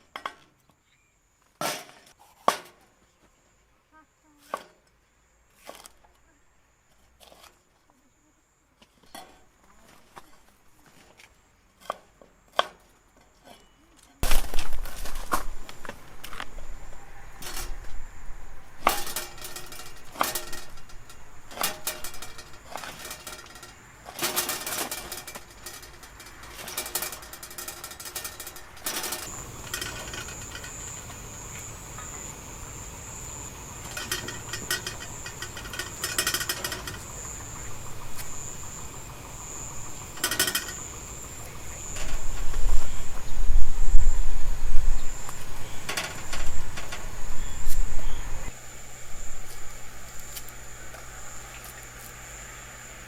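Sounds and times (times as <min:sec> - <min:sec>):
insect trill: 0:14.2 - 0:53.0
gear clicking and knocking: 0:18.8 - 0:32.4, 0:33.0 - 0:43.6.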